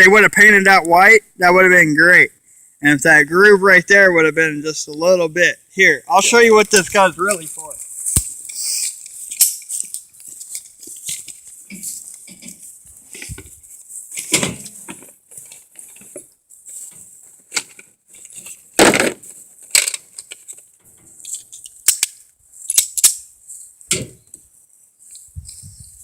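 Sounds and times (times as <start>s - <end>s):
steady high hiss: 0.9s - 14.8s.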